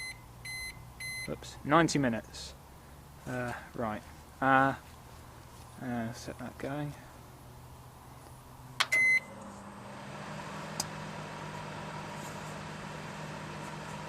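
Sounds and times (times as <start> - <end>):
microwave beep: 0.0 - 1.4, 8.8 - 9.4
microwave electrical hum: 0.0 - 14.0
microwave click: 8.8 - 9.5, 10.7 - 11.5.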